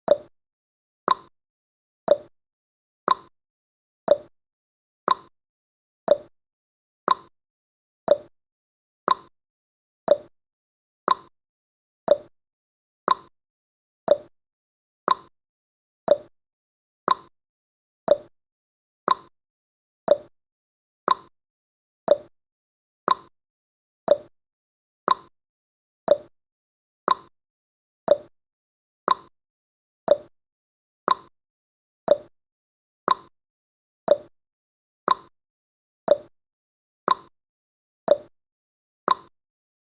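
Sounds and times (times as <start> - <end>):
clock ticking: 0.1 - 0.3, 2.1 - 2.3, 4.1 - 4.3, 6.1 - 6.3, 8.1 - 8.3, 10.1 - 10.3, 12.1 - 12.3, 14.1 - 14.3, 16.1 - 16.3, 20.1 - 20.3, 22.1 - 22.3, 26.1 - 26.3, 28.1 - 28.3, 30.1 - 30.3, 32.1 - 32.3, 34.1 - 34.3, 36.1 - 36.3, 38.1 - 38.3.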